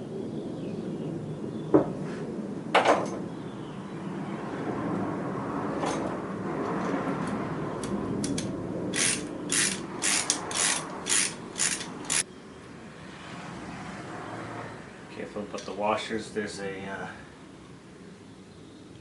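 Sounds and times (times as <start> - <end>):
socket ratchet clicking: 8.2 - 12.2.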